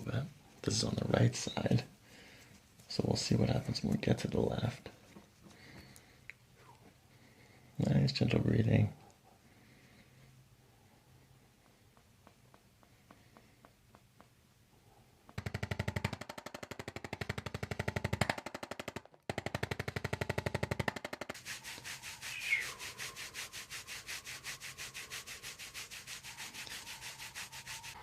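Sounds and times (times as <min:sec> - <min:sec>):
percussive massager pulsing: 0:15.3 - 0:28.0.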